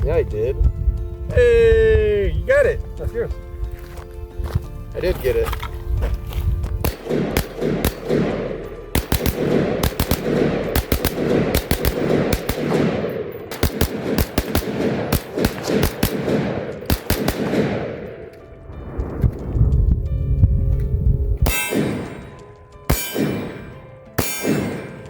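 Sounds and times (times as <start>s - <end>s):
handgun shots echoing: 6.8s - 18.6s, 21.4s - 25.0s.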